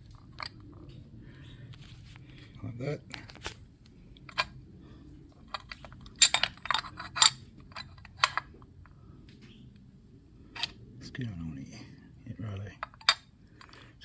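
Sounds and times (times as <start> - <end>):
small metal parts clinking: 5.4 - 8.6, 12.7 - 14.0.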